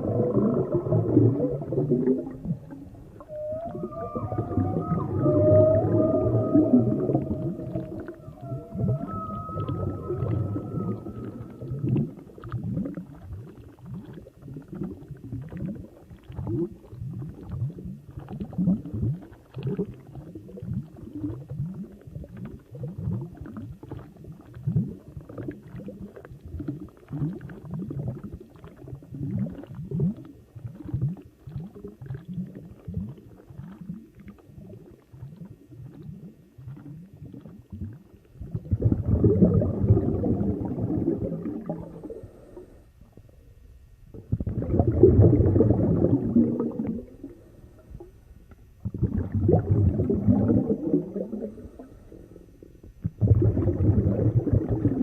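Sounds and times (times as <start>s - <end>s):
underwater gurgling pulses: 0.0s - 55.0s
thin high call-like tone: 3.2s - 11.7s.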